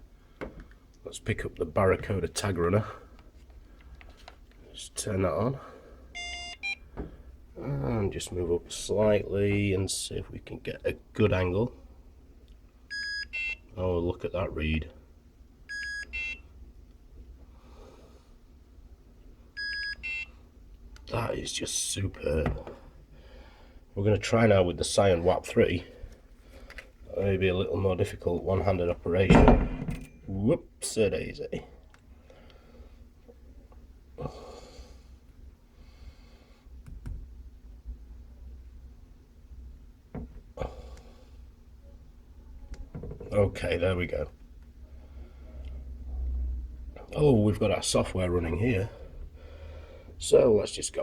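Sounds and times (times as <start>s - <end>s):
low steady hum: 0.0s - 51.0s
handheld reader beeping: 6.2s - 6.8s, 12.9s - 13.6s, 15.7s - 16.4s, 19.6s - 20.3s
breathing close to microphone: 49.0s - 50.2s.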